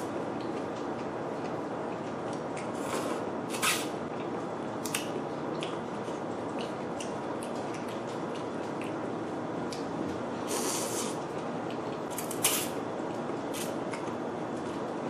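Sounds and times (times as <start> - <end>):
chewing with wet mouth clicks: 0.4 - 2.8, 4.2 - 10.2, 11.3 - 14.9
person slurping: 10.5 - 11.2.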